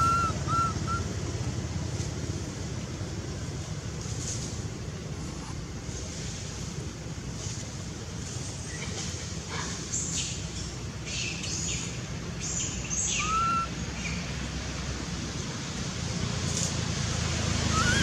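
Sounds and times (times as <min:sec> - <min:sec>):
high-pitched animal chirps: 0:00.0 - 0:01.0, 0:13.1 - 0:13.7, 0:17.7 - 0:18.0
rising whistle-like call: 0:00.0 - 0:01.0, 0:13.1 - 0:13.7, 0:17.7 - 0:18.0.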